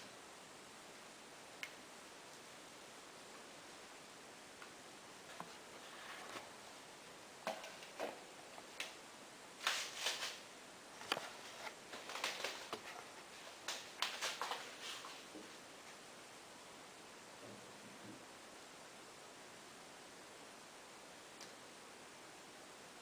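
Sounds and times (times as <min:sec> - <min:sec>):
rustling: 0:09.6 - 0:16.0
clicks and knocks of handling: 0:11.0 - 0:15.2.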